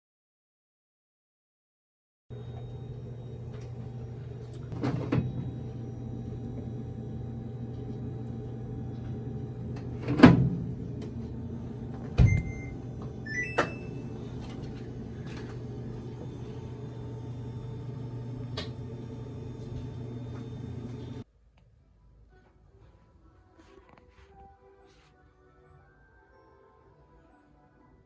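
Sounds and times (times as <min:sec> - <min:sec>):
appliance electric hum: 0:02.3 - 0:21.2
short high-pitched tones: 0:12.2 - 0:14.2.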